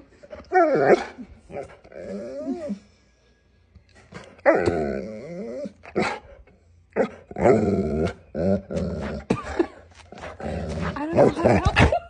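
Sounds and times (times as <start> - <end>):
dog growling: 0.4 - 2.8, 4.4 - 6.3, 7.0 - 12.0.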